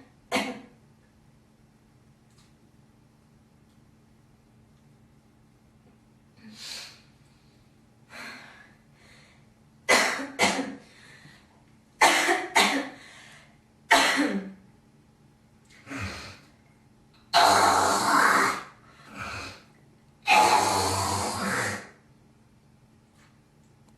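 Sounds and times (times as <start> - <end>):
girl coughing: 0.3 - 0.7, 9.9 - 10.8, 12.0 - 13.0, 13.9 - 14.6.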